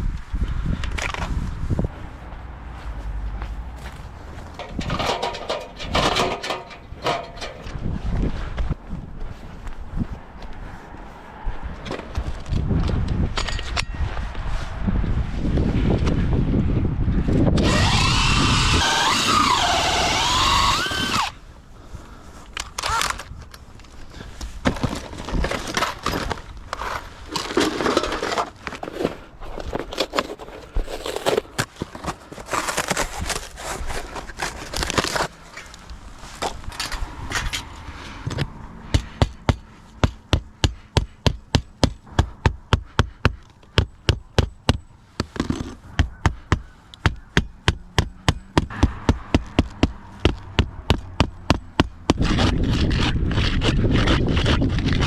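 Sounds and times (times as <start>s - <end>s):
knocks and handling noises: 3.5s - 7.8s, 22.5s - 52.2s
power tool running: 17.6s - 21.4s
hammer blows: 46.0s - 52.2s.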